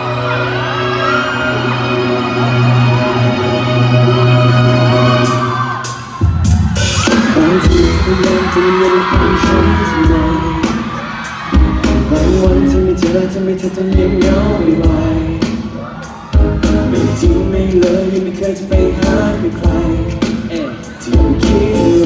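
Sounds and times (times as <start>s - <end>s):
pop song with pounding drum beat: 5.2s - 22.0s
person singing: 6.8s - 22.0s.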